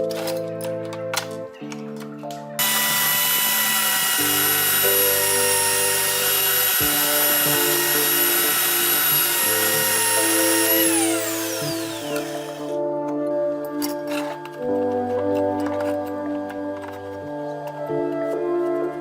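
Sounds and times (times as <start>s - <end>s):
background music: 0.0s - 19.0s
motor spinning down: 2.6s - 12.8s
power tool whining: 2.6s - 12.8s.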